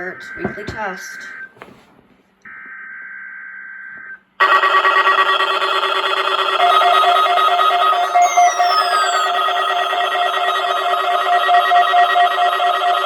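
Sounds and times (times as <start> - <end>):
alert receiver alarm tones: 0.0 - 1.5, 4.4 - 13.0
buzzy data burst tone: 4.4 - 13.0
pulsing beeps: 4.4 - 13.0.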